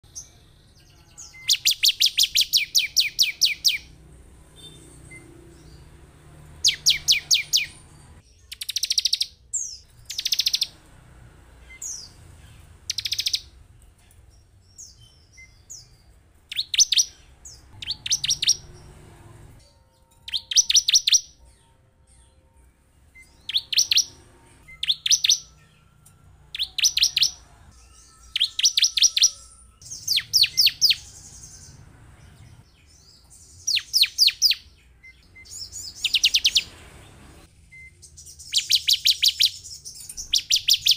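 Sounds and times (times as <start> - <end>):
bird calling rapid high notes: 11.6 - 13.6, 16.5 - 18.8.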